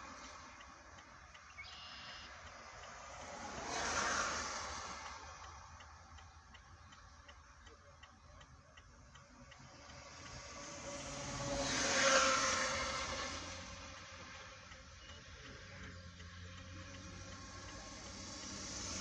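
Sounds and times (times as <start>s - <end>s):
faint steady ticking: 0.0s - 19.0s
vehicle passing: 2.3s - 6.6s, 9.2s - 14.8s, 15.4s - 19.0s.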